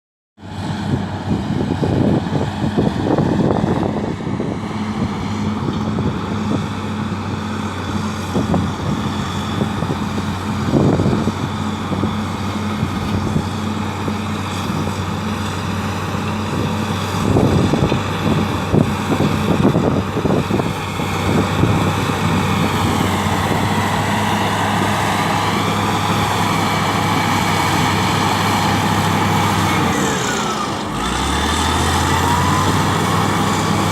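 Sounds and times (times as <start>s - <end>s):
bulldozer diesel engine running: 0.4s - 33.9s.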